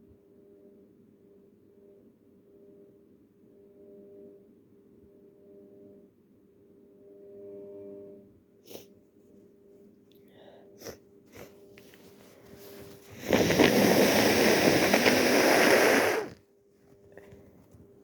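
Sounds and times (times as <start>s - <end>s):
person blowing nose: 8.7s - 8.9s, 12.4s - 16.4s
person sniffling: 8.7s - 9.0s, 10.3s - 16.4s.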